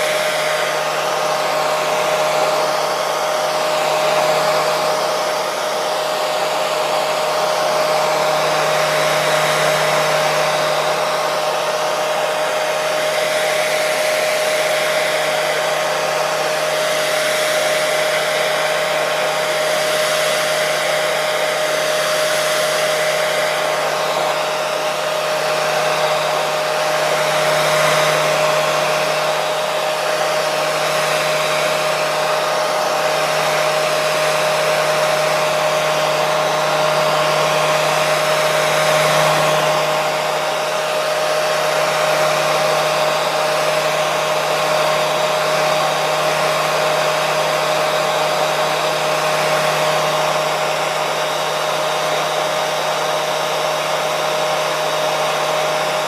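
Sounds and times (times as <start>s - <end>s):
hair dryer blowing: 0.0s - 56.0s.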